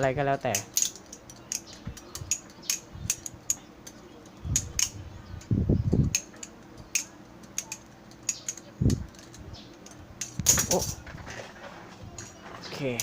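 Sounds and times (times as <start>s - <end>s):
butterfly knife clicking: 0.4s - 10.5s.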